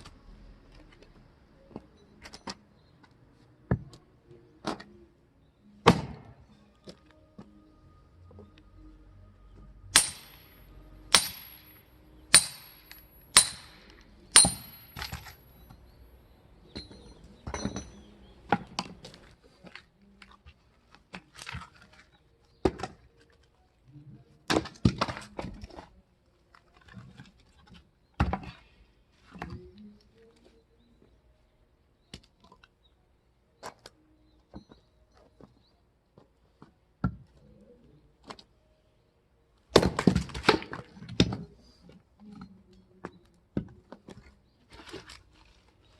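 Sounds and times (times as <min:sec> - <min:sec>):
axe splitting firewood: 0:09.9 - 0:10.5, 0:11.1 - 0:15.5, 0:39.7 - 0:41.4
wood pieces clattering: 0:12.4 - 0:15.5.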